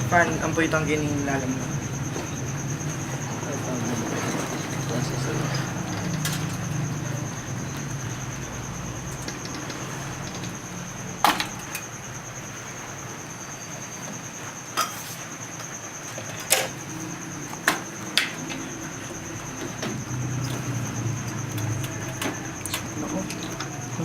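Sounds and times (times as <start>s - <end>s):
computer parts clicking and knocking: 9.0s - 11.9s.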